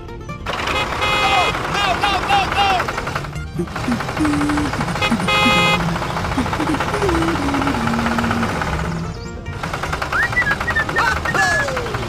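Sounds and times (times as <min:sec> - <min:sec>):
background music with bass melody: 0:00.0 - 0:00.5, 0:07.4 - 0:10.9
fast rattling rhythm: 0:00.5 - 0:12.0
whistle-like glides: 0:10.1 - 0:12.0.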